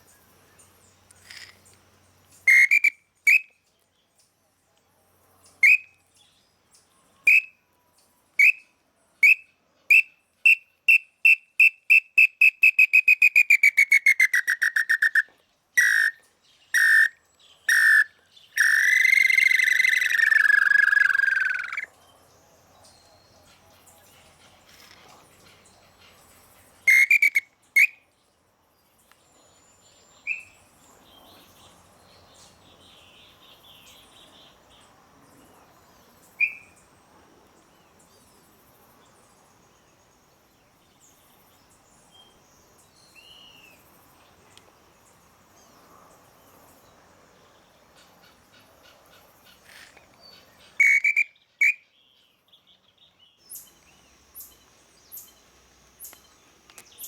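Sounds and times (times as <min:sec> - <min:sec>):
birds: 0:00.0 - 0:10.1, 0:13.8 - 0:57.0
faint insects: 0:00.0 - 0:57.0
whistled bird call notes: 0:02.4 - 0:03.6, 0:05.6 - 0:06.0, 0:07.3 - 0:07.6, 0:08.4 - 0:21.9, 0:26.8 - 0:28.0, 0:30.2 - 0:30.6, 0:36.4 - 0:36.8, 0:50.7 - 0:52.3.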